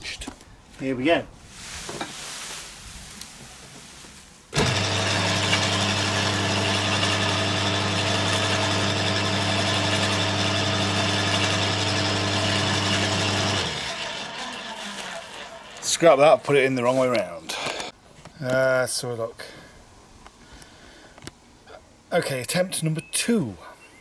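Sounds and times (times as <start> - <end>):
garden shredder running: 4.5 - 16.2.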